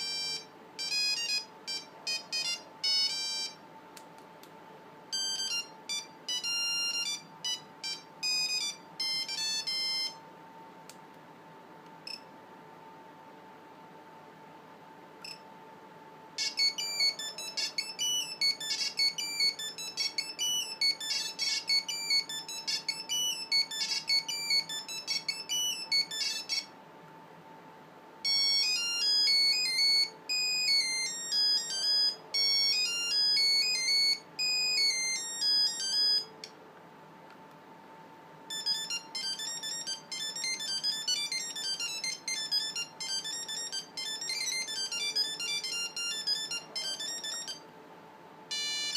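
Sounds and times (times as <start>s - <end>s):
monophonic phone ringtone melodies: 0.0s - 3.6s, 5.1s - 10.2s, 16.4s - 26.7s, 28.2s - 36.5s, 38.5s - 47.6s, 48.5s - 48.9s.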